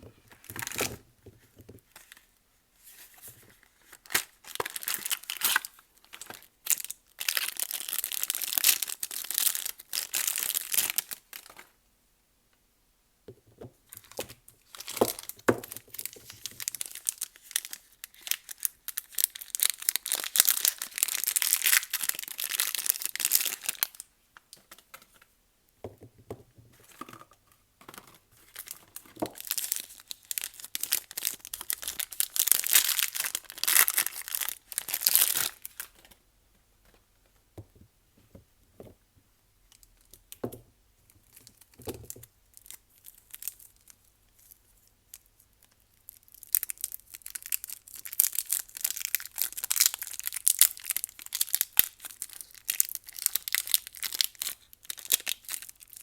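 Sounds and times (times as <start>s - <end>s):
packaging crinkling and tearing: 0.3s - 1.0s, 3.6s - 11.6s, 13.9s - 24.1s, 27.9s - 36.2s, 45.2s - 56.0s.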